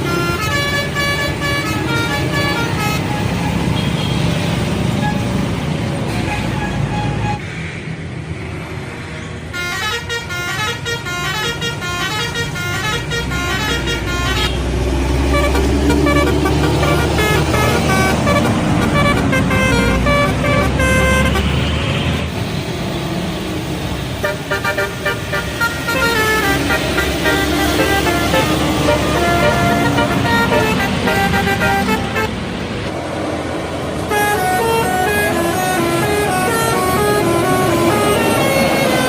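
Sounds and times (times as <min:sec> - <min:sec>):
melodic air horns: 0:00.0 - 0:04.2, 0:09.6 - 0:21.8, 0:24.2 - 0:32.4, 0:34.1 - 0:39.0
bus engine rumble: 0:00.0 - 0:39.0.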